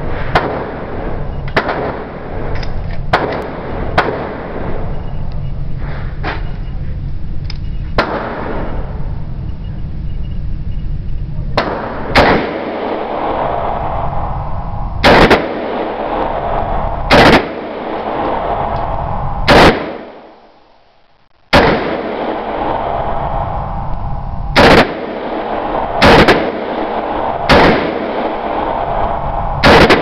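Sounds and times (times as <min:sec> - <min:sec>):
low rumble: 0:00.0 - 0:30.0
rifle shots: 0:00.1 - 0:05.1, 0:08.0 - 0:09.0, 0:11.6 - 0:13.8, 0:15.0 - 0:18.8, 0:19.4 - 0:20.5, 0:21.5 - 0:23.2, 0:24.5 - 0:30.0.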